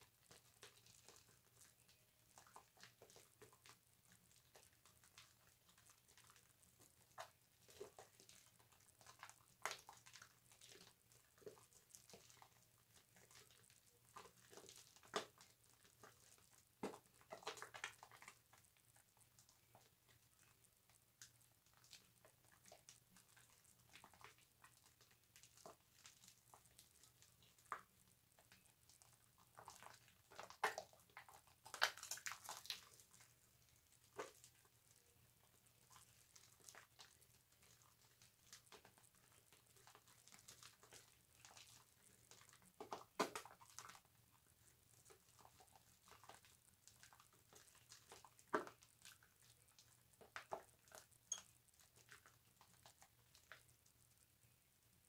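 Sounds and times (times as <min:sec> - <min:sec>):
soap lathering squishing: 0:00.0 - 0:54.6.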